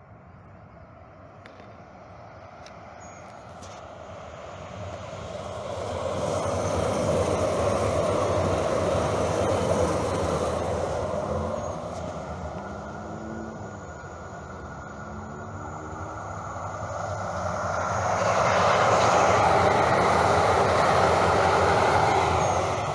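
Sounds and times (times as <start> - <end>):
vehicle passing by: 6.4 - 22.9.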